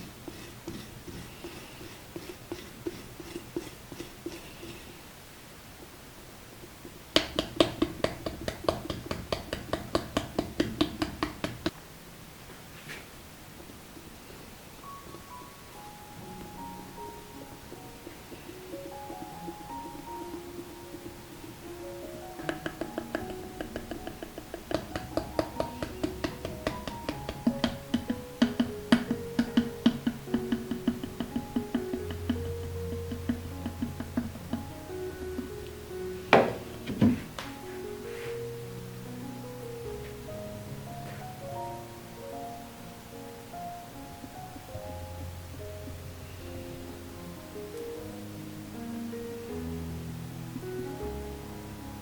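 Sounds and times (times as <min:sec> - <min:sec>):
light tapping on pottery: 0:00.0 - 0:05.0, 0:06.6 - 0:11.8, 0:16.2 - 0:37.6
wood block clicking beat: 0:06.6 - 0:11.7, 0:16.3 - 0:35.7
gentle melody: 0:13.5 - 0:52.0.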